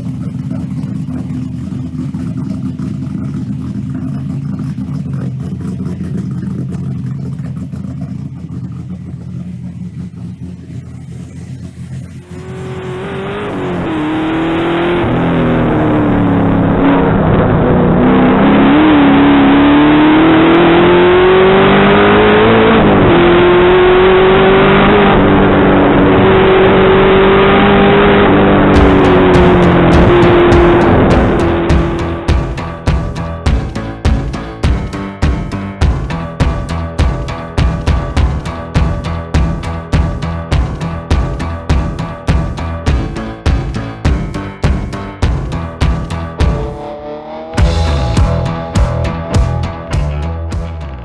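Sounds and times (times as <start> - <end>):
engine idling: 0.0 - 17.0, 28.8 - 47.0, 47.6 - 51.0
engine revving hard: 12.1 - 51.0.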